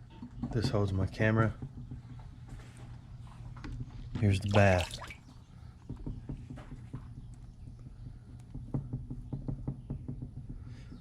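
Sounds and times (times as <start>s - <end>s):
light knocks and taps: 5.8s - 11.0s.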